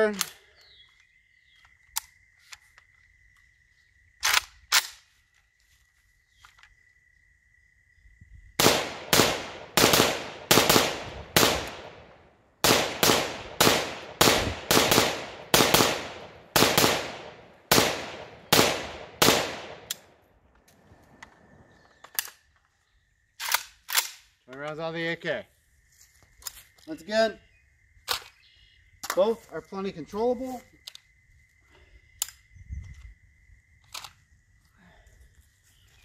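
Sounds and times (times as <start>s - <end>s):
rifle firing shots: 8.6s - 20.1s.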